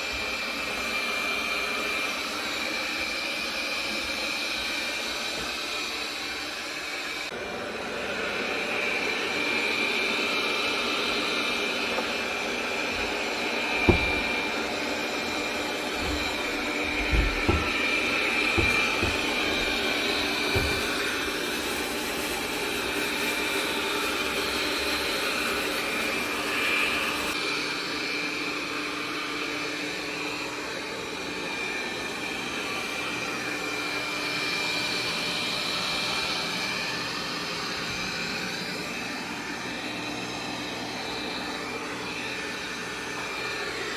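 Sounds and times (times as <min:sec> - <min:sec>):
robot vacuum whining: 0:00.0 - 0:28.4
dull knocks: 0:12.9 - 0:21.7.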